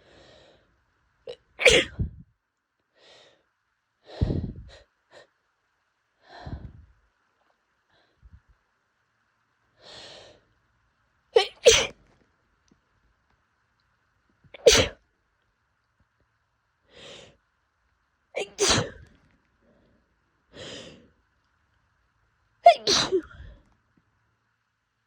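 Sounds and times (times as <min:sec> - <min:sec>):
person sneezing: 0:01.6 - 0:02.1, 0:11.4 - 0:11.9, 0:14.6 - 0:15.0, 0:18.4 - 0:19.0, 0:22.7 - 0:23.5
breath sounds: 0:04.0 - 0:05.3, 0:06.2 - 0:06.9.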